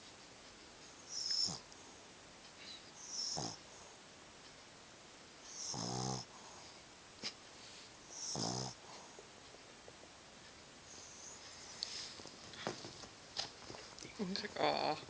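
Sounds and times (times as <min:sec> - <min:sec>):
dog snoring: 0:01.1 - 0:01.7, 0:03.0 - 0:04.0, 0:05.5 - 0:06.8, 0:08.1 - 0:09.2.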